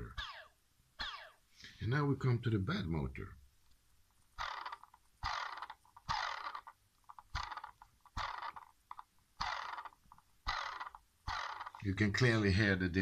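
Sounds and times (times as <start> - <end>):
drone motor spinning: 4.4 - 6.7, 7.3 - 8.7, 9.4 - 11.8.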